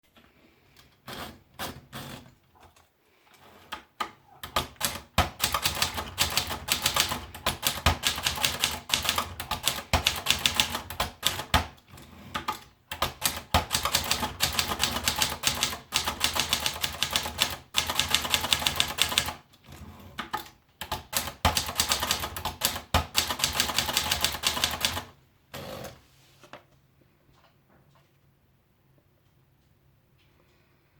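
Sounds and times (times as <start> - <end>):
typewriter typing: 4.4 - 26.0.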